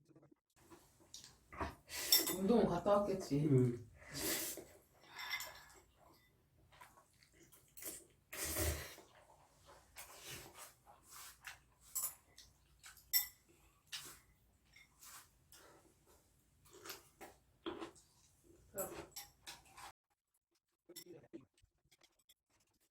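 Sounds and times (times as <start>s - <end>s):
cutlery and dishes clinking: 2.0s - 2.6s, 5.0s - 6.3s, 10.0s - 15.3s, 18.8s - 19.9s.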